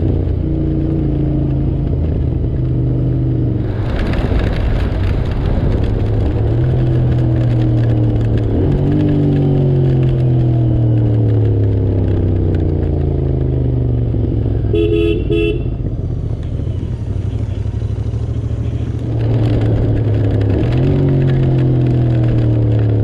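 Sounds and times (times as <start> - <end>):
horn toots: 14.7 - 15.9.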